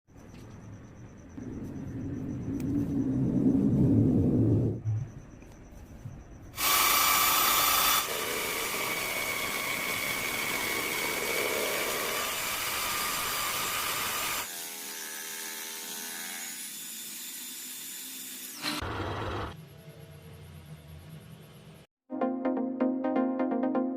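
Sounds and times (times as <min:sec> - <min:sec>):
power tool machining metal: 0:06.6 - 0:19.6.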